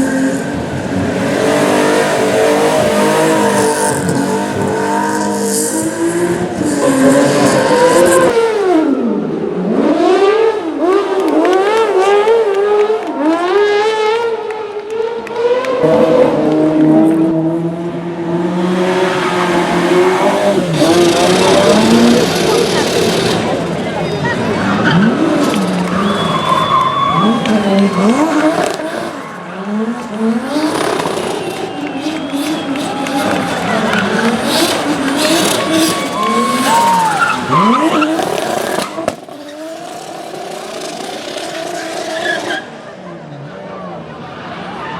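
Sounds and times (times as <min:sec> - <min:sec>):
tyres skidding: 0:00.0 - 0:08.5, 0:15.8 - 0:43.0
rally car engine at full throttle: 0:00.0 - 0:44.9.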